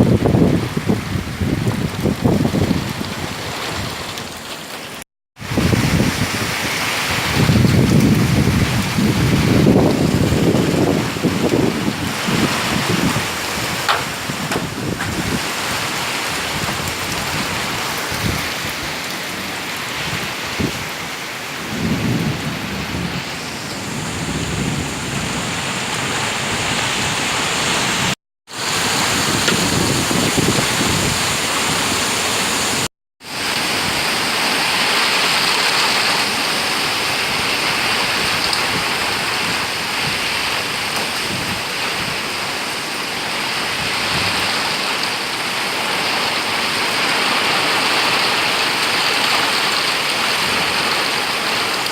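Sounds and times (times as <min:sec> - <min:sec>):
heavy rain and wind: 0:00.0 - 0:51.9
low thunder rumbles: 0:07.1 - 0:18.8, 0:21.6 - 0:28.1.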